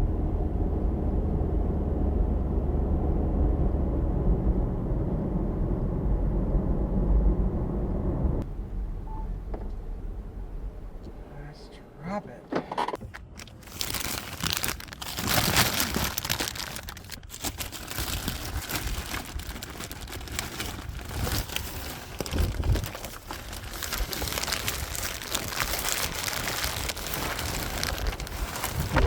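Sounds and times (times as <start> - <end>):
plastic bags rustling: 13.1 - 29.0
wind buffeting microphone: 17.8 - 29.0.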